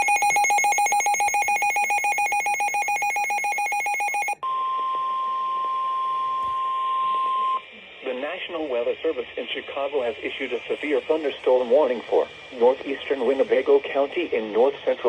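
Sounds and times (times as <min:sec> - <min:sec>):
steady warning alarm tone: 0:00.0 - 0:04.6.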